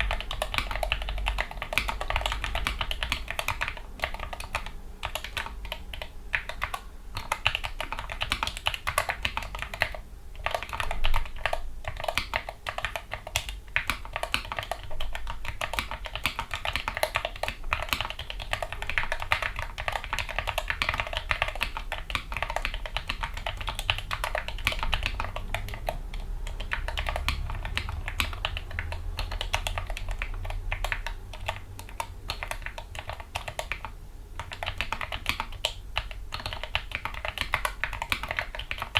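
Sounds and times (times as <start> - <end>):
typing on mechanical keyboard: 0.0 - 38.9.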